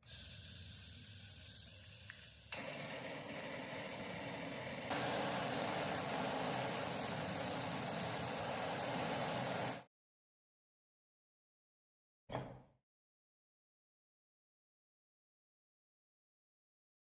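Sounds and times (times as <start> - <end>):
motor running steadily: 2.6 - 9.9.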